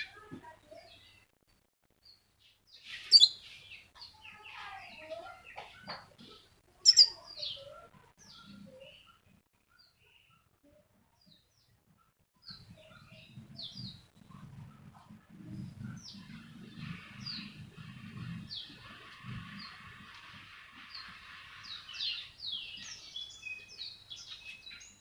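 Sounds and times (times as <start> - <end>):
bird chirping: 2.1 - 9.2, 12.4 - 14.4, 15.5 - 25.0.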